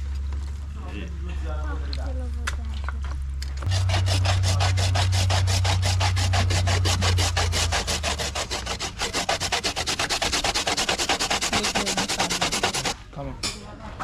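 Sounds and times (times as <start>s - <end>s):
low steady hum: 0.0s - 14.0s
coconut scraping on hand grater: 3.6s - 13.0s.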